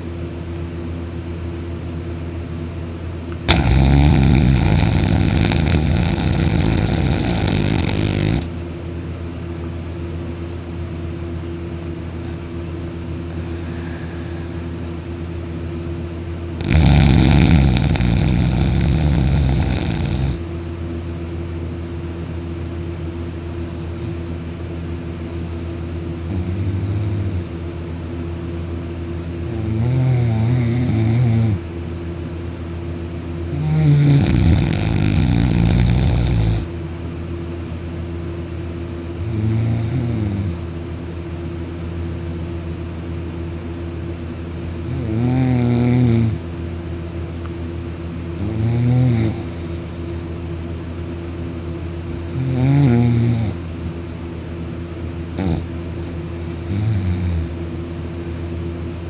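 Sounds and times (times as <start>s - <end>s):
steady low hum: 0.0s - 59.0s
loud snoring: 3.4s - 8.5s, 16.6s - 20.4s, 26.3s - 27.6s, 29.3s - 31.6s, 33.4s - 36.7s, 39.1s - 40.6s, 44.8s - 46.4s, 48.4s - 50.3s, 52.1s - 54.0s, 55.4s - 55.7s, 56.4s - 57.6s.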